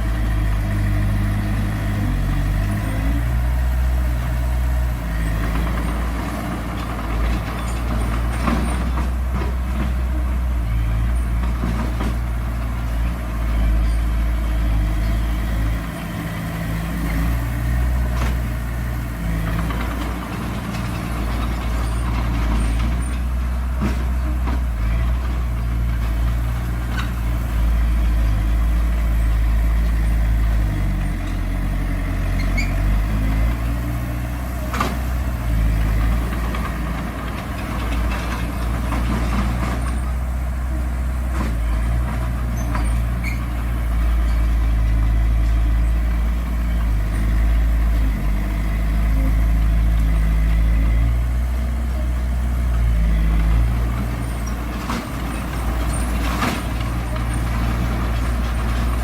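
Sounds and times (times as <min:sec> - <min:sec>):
heavy diesel machinery running: 0:00.0 - 0:59.0.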